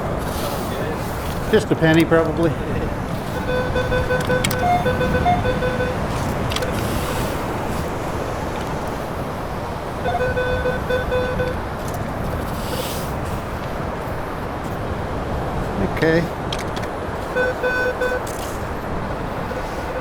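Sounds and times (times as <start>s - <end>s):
surf: 0.0s - 20.0s
wind: 0.0s - 20.0s
metal detector beeping: 3.0s - 7.9s, 10.0s - 12.0s, 17.2s - 20.0s.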